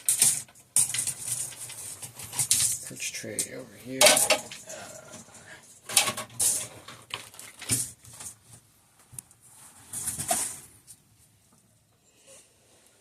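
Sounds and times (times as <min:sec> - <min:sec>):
metal parts clattering and scraping: 0:00.0 - 0:08.4.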